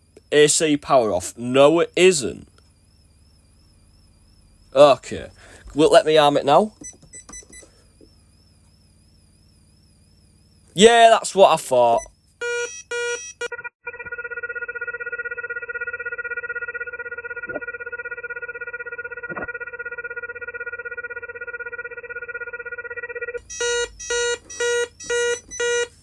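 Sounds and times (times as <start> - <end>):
alarm keypad beeping: 1.0 - 13.5, 23.4 - 26.0.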